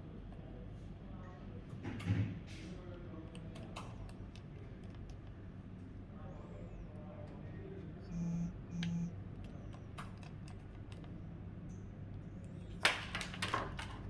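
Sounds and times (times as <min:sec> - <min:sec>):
short electronic beeps: 0:08.1 - 0:09.1
typing on computer keyboard: 0:08.2 - 0:11.2.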